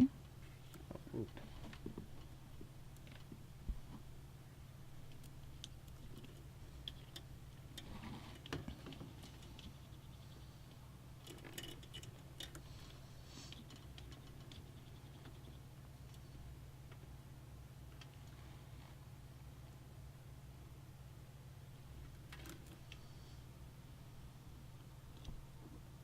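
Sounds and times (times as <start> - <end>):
steady low hum: 0.0 - 26.0
small clicks of computer parts: 11.2 - 12.7.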